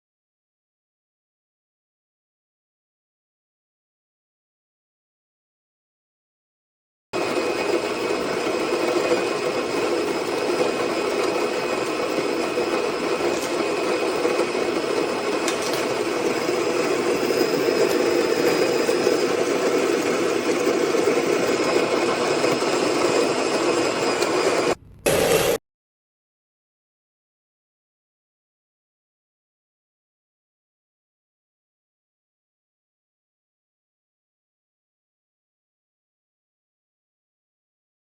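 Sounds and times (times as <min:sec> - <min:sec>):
coffee grinder grinding beans: 0:07.2 - 0:25.6.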